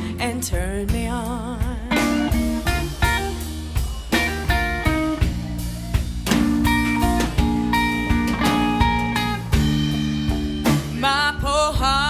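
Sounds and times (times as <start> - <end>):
live blues band playing: 0.0 - 12.0
drum beat: 0.6 - 12.0
plucked guitar notes: 1.9 - 11.0.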